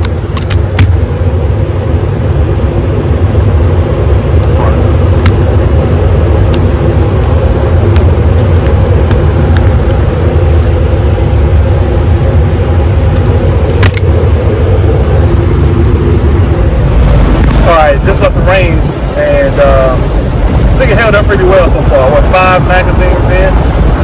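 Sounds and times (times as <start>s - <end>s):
engine and road noise: 0.0s - 24.0s.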